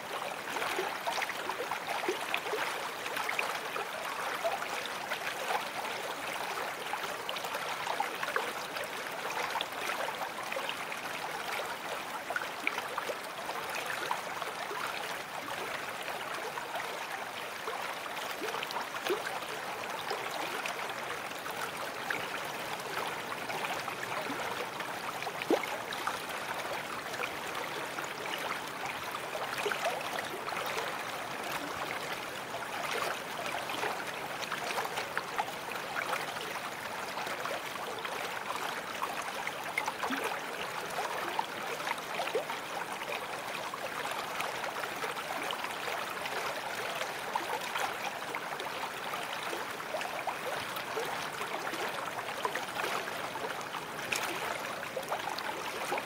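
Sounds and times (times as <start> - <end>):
stream bubbling and gurgling: 0.0 - 56.0.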